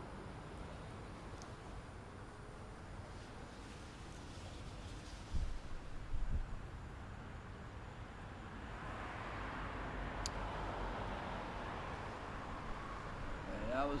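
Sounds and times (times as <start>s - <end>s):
car passing by: 8.7s - 14.0s.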